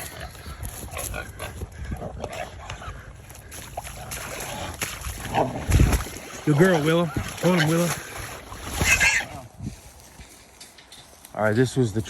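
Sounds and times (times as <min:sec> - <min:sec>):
short animal noises: 0:03.8 - 0:09.6.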